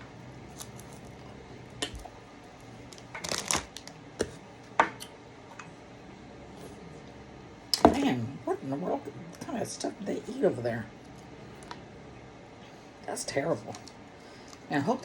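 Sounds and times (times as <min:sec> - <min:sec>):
candy packaging crinkling: 0:00.5 - 0:04.3.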